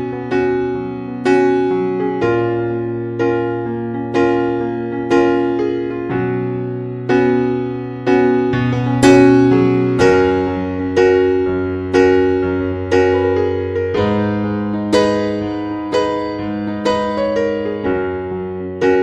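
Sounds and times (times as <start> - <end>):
slow gentle piano music: 0.0 - 19.0.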